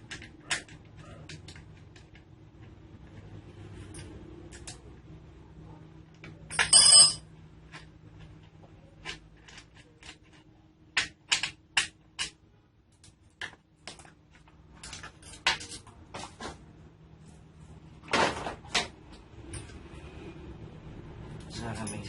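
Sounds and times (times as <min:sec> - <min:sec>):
metal parts clinking and knocking: 0:06.2 - 0:08.4, 0:09.0 - 0:16.4.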